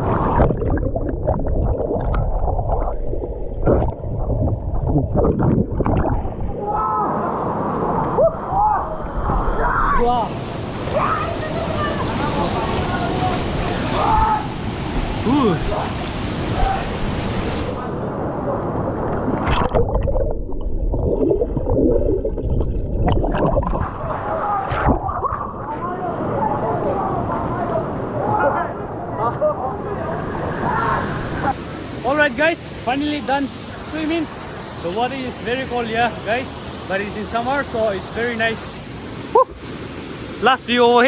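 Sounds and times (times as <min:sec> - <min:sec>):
muffled water sloshing and gurgling: 0:00.0 - 0:06.6, 0:10.6 - 0:25.8
rush of falling water: 0:06.5 - 0:19.8, 0:23.7 - 0:41.0.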